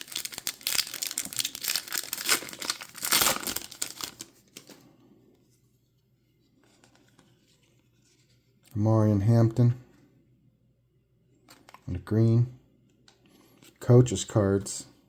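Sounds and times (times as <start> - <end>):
wrapper tearing and crinkling: 0.0 - 4.7.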